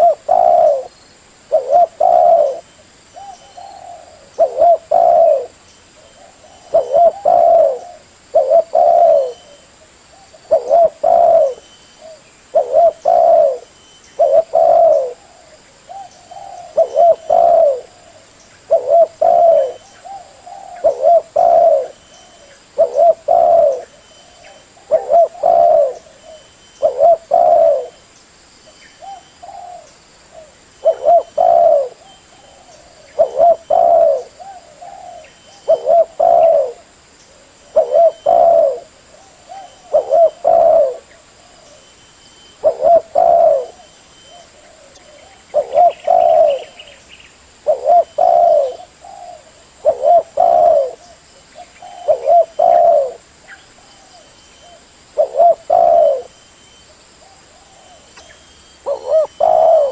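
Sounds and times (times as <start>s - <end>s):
dove cooing: 0.0s - 28.0s, 29.0s - 47.0s, 47.6s - 59.9s.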